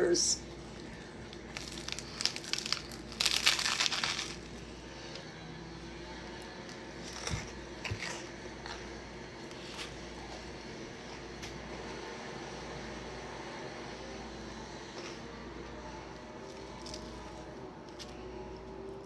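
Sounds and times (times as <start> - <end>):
crunchy bite into sandwich: 1.4 - 4.6.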